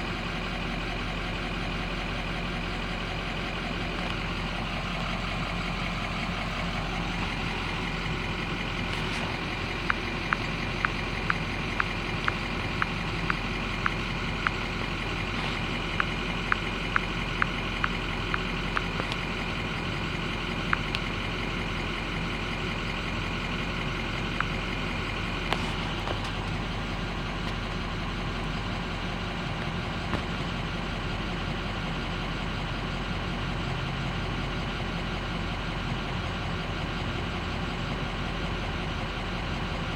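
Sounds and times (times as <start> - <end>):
diesel engine idling: 0.0 - 39.9
sharp clicks: 8.9 - 14.7.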